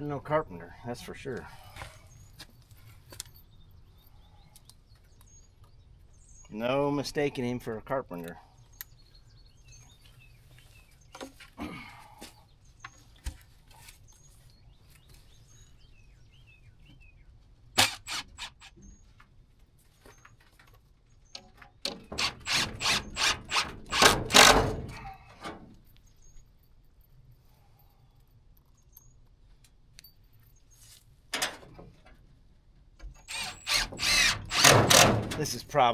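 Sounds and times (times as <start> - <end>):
birds chirping: 0.0 - 13.2, 13.8 - 17.5.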